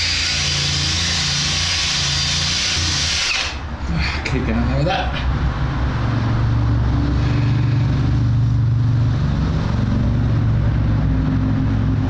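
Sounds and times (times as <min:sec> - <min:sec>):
electric power tool running: 0:00.0 - 0:03.6.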